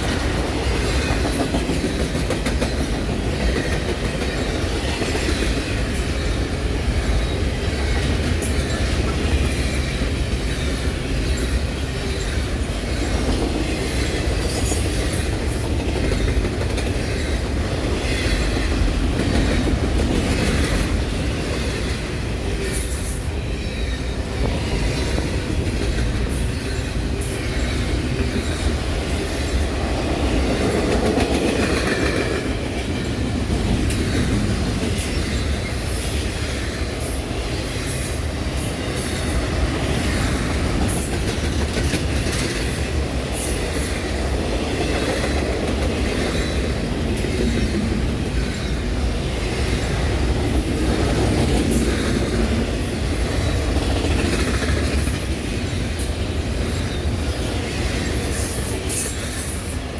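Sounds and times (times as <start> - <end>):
train cars rumbling: 0.0 - 59.9
wheels clacking over rail joints: 0.0 - 59.9.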